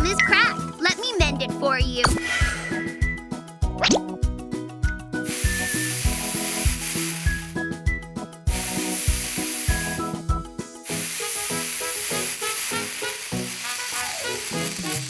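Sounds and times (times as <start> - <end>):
bouncy children's music: 0.0 - 15.0
cartoon welding hiss: 2.0 - 3.1, 5.2 - 7.6, 8.5 - 10.2, 10.8 - 15.0.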